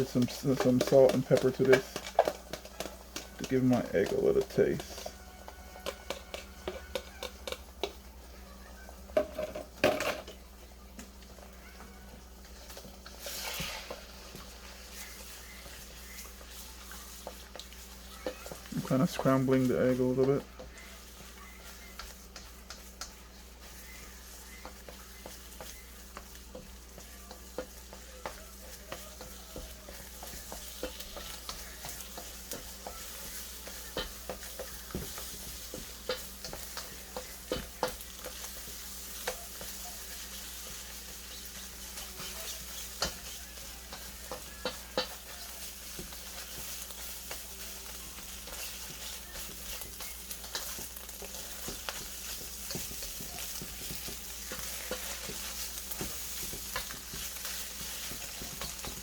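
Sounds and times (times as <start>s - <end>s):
utensil scraping a pot: 0.0s - 7.9s, 12.8s - 21.3s
eggs sizzling in hot oil: 0.0s - 59.0s.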